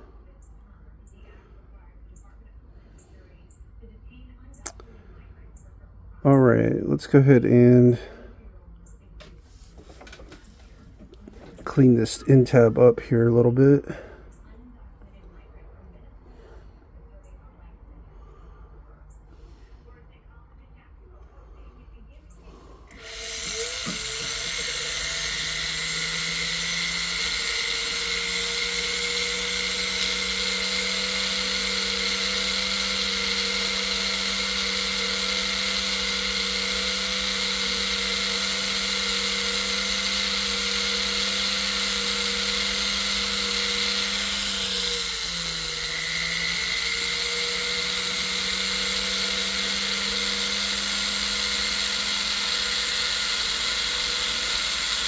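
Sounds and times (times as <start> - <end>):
rotary tool motor whine: 22.4 - 55.0.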